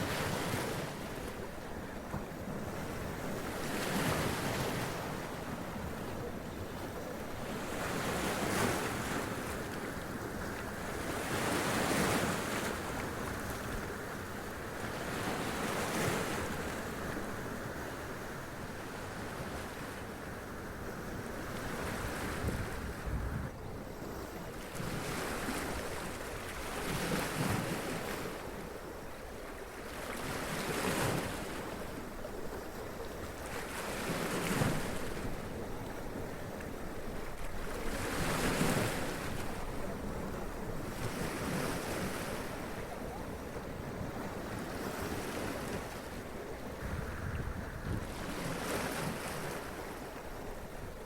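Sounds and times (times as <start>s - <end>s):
wind rumble on microphone: 20.9s - 23.8s, 37.0s - 49.5s.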